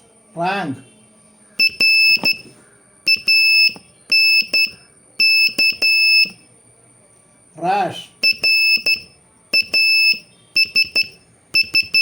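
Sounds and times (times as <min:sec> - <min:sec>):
morse code beeps: 0:01.6 - 0:02.5, 0:03.1 - 0:06.5, 0:08.2 - 0:12.0.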